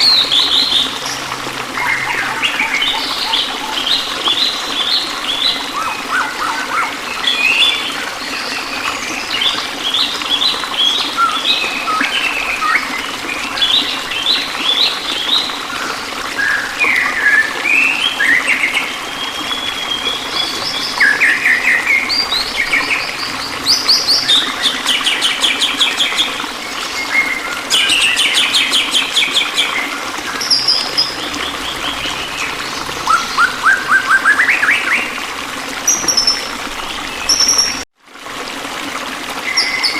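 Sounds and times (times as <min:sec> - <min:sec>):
running water trickling: 0:00.0 - 0:39.9
songbirds chirping and singing: 0:16.4 - 0:35.2.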